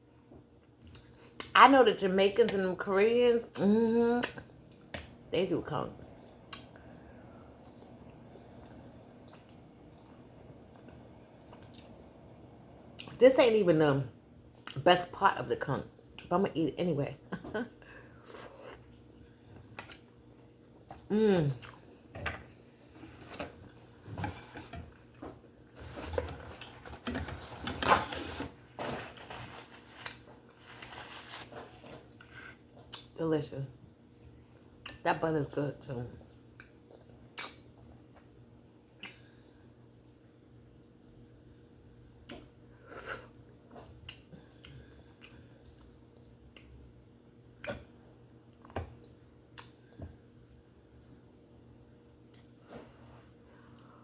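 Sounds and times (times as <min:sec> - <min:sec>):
faint steady hum: 0:00.0 - 0:54.0.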